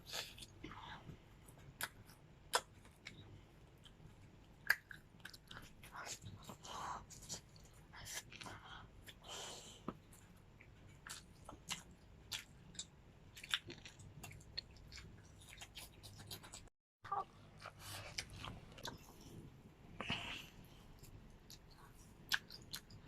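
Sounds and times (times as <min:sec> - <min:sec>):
chewing crisp food: 0:03.8 - 0:09.2, 0:10.0 - 0:16.7, 0:17.4 - 0:19.4, 0:21.0 - 0:23.0.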